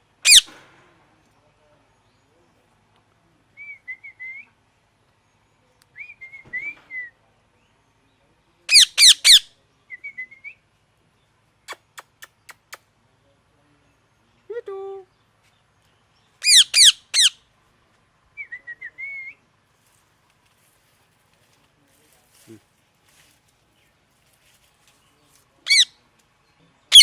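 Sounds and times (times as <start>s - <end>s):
parrot harsh screeches: 0.2s - 0.5s, 16.4s - 17.3s, 25.7s - 25.9s
parrot warbling chirps: 0.2s - 0.5s, 8.7s - 9.4s, 16.4s - 17.4s, 25.7s - 25.9s.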